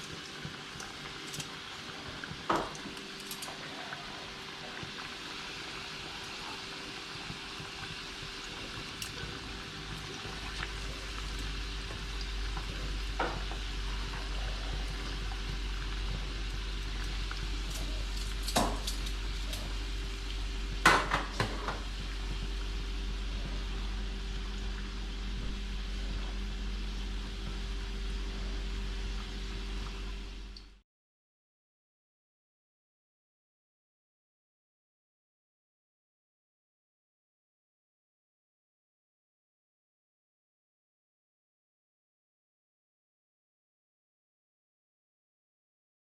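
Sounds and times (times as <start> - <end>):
food sizzling in a pan: 0.0 - 30.5
low steady hum: 0.0 - 30.8.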